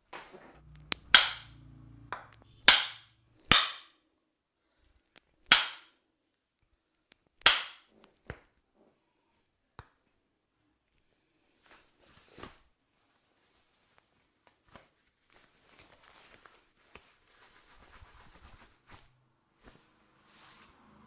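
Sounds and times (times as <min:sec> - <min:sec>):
sharp ringing impacts: 0:01.0 - 0:03.8.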